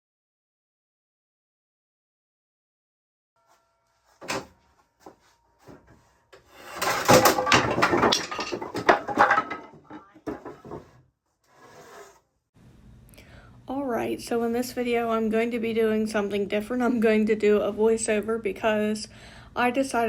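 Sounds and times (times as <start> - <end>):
wood knocking and clattering: 4.2 - 11.0.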